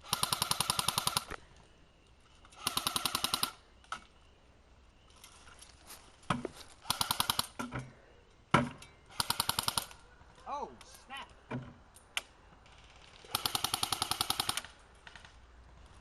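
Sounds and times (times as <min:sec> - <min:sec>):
airsoft rifles firing full-auto: 0:00.0 - 0:01.4, 0:02.6 - 0:03.6, 0:06.8 - 0:07.6, 0:09.1 - 0:10.0, 0:12.6 - 0:15.3.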